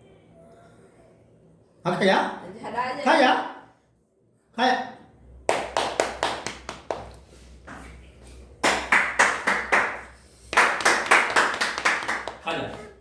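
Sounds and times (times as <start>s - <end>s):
rapid hand claps: 5.5s - 7.2s, 8.6s - 12.8s.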